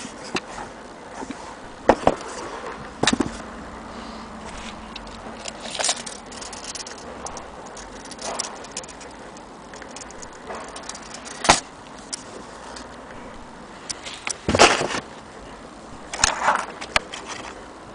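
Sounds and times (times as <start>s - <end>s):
small hard objects clicking: 4.9s - 13.0s.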